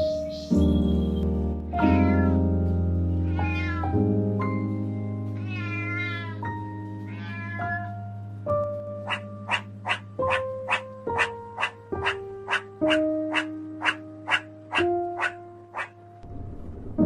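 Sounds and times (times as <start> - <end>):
soft piano music: 0.0 - 17.0
cat meowing: 1.7 - 2.5, 3.2 - 4.1, 5.3 - 8.1.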